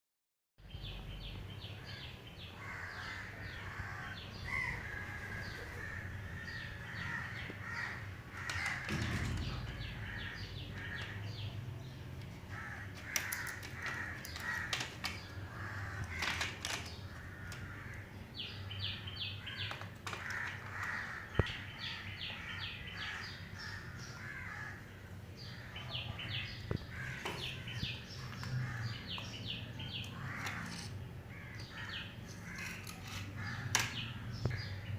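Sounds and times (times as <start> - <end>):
birds calling and chirping: 0.6 - 34.9.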